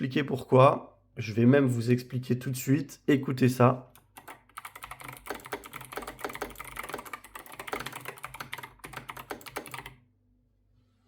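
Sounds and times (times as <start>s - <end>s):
clicky keyboard typing: 3.9s - 10.0s.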